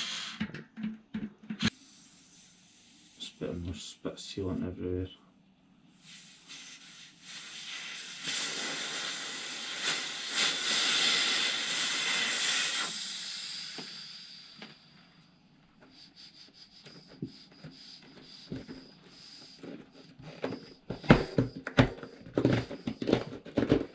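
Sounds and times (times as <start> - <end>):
rushing air hiss: 0.0 - 0.4, 6.0 - 14.9.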